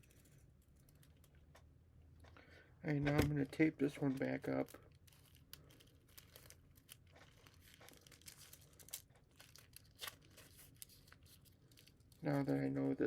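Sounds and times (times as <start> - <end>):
adhesive tape crinkling and tearing: 4.1 - 12.6.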